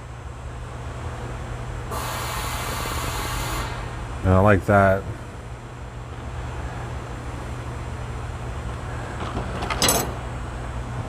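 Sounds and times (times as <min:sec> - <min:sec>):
low background hum: 0:00.0 - 0:11.0
metal pry bars clattering: 0:09.2 - 0:10.3.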